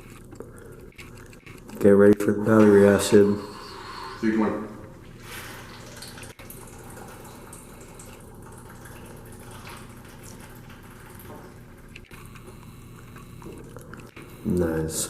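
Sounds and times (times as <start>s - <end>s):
liquid gurgling while drinking: 2.5s - 14.8s.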